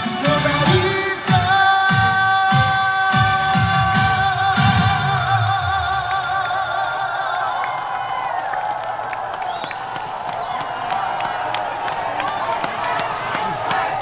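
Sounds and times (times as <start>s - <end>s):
amplified band music: 0.0s - 6.2s
man singing a long note: 0.0s - 7.8s.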